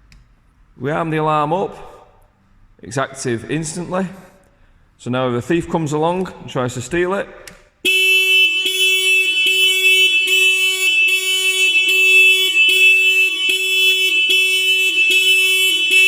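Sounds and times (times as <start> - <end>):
motorcycle alarm tone: 7.8 - 16.0.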